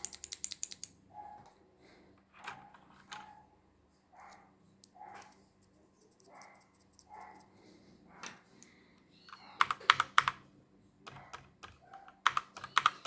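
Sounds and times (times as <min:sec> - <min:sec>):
mechanical keyboard typing: 0:00.0 - 0:01.0, 0:09.6 - 0:10.4, 0:11.1 - 0:13.0.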